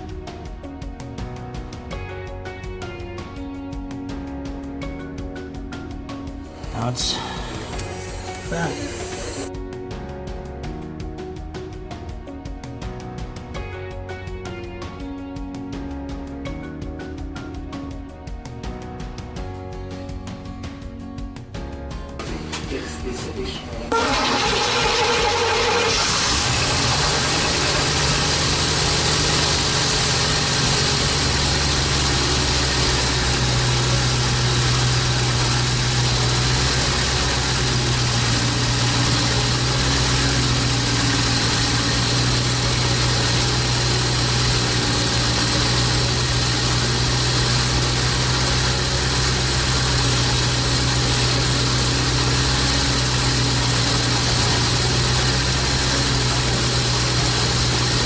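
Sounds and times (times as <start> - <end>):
car engine idling: 6.4 - 9.5, 22.2 - 58.0.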